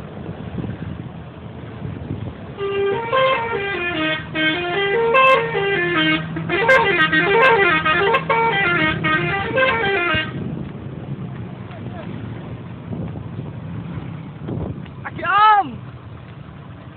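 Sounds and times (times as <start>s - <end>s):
musical bus air horn: 2.6s - 10.4s.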